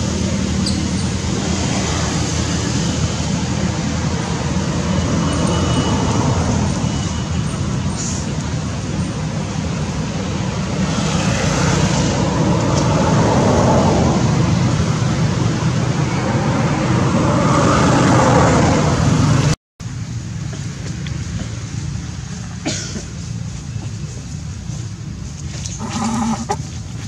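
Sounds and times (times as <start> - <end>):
road traffic rumble: 0.0 - 27.0.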